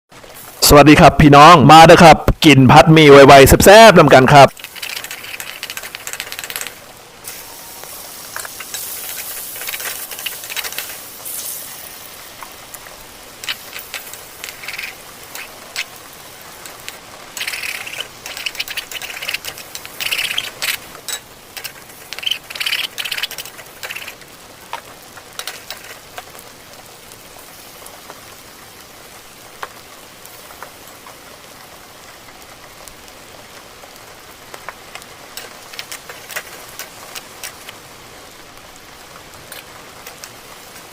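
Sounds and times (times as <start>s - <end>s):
utensils clicking: 4.5s - 7.4s, 13.4s - 16.0s, 16.6s - 26.2s
wet chewing and slurping: 16.6s - 24.2s.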